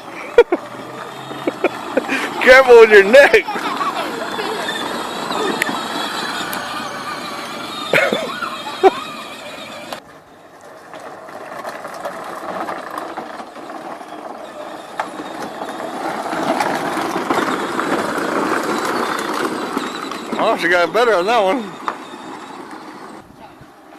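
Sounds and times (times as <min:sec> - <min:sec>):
toy car electric motors rumbling: 0:00.0 - 0:23.9
short squeals: 0:00.6 - 0:10.0, 0:13.0 - 0:23.6.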